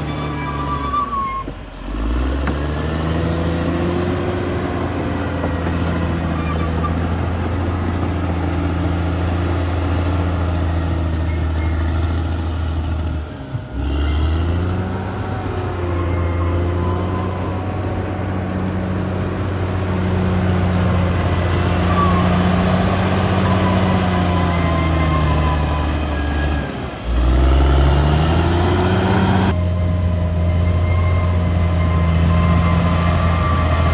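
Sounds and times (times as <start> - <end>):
bulldozer diesel engine running: 0.0 - 33.9.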